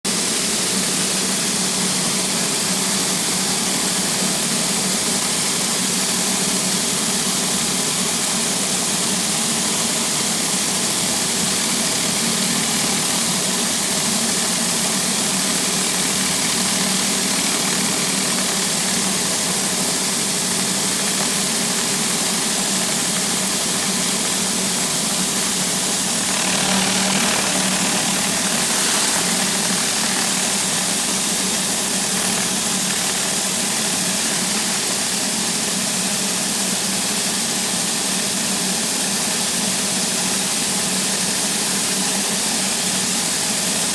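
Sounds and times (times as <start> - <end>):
pressure washer engine running: 10.5 - 34.3
high-pressure water spray hiss: 26.0 - 32.4.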